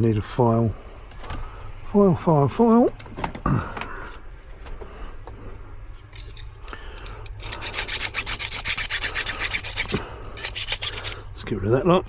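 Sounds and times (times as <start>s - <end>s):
hand file rasping on metal: 6.2s - 11.4s.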